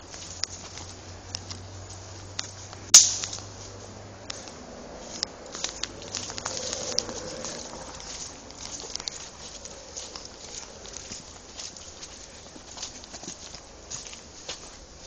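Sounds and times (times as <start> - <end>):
footsteps on dry leaves: 0.0 - 15.0
twig snapping: 2.4 - 3.5.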